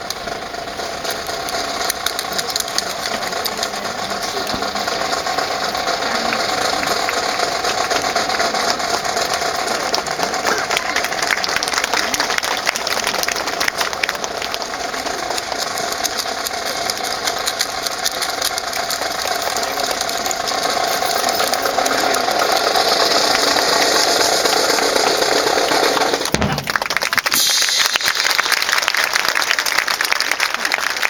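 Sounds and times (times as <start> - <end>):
audience applause: 0.0 - 31.0
low thump: 26.3 - 26.9.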